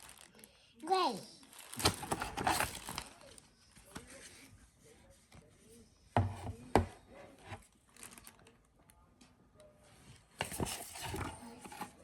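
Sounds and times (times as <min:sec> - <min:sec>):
packaging rustling: 0:00.0 - 0:00.5, 0:01.4 - 0:03.4, 0:07.9 - 0:08.5.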